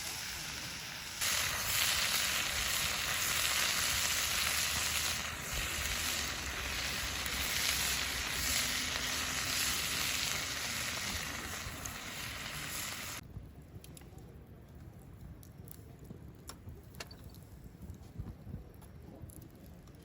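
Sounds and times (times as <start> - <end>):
pork sizzling in a skillet: 0.0 - 13.2.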